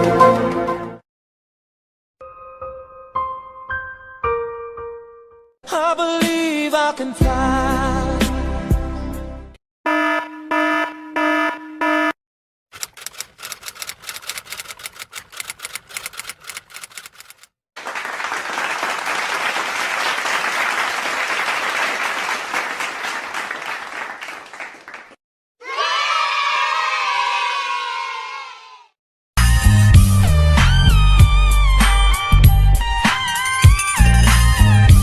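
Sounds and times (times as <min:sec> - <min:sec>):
pulsed electronic alarm tone: 0:09.9 - 0:12.2
rapid typing clicks: 0:12.8 - 0:17.5
applause: 0:17.8 - 0:25.2.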